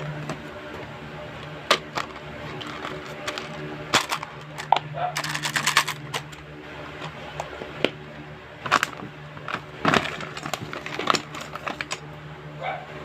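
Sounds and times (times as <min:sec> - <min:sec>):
steady low hum: 0:00.0 - 0:13.0
gift packaging crackling and rustling: 0:01.7 - 0:06.4, 0:08.6 - 0:12.0.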